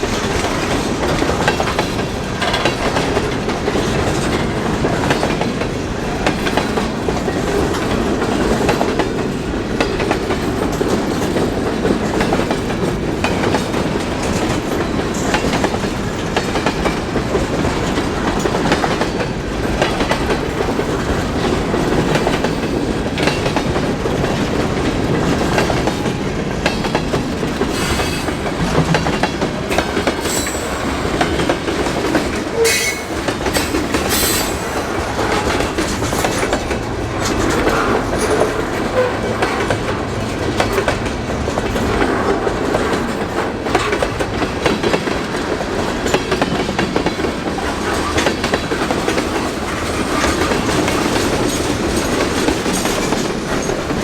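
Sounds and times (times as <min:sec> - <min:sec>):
freight train cars rolling past: 0:00.0 - 0:54.0
wheels clicking over rail joints: 0:00.0 - 0:54.0
high wheel squeals: 0:32.6 - 0:33.2.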